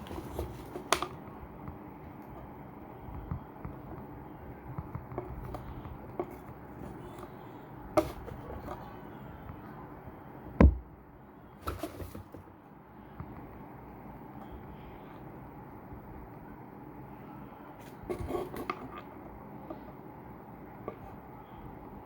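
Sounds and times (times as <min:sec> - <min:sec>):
heavy thump: 0:10.6 - 0:10.9.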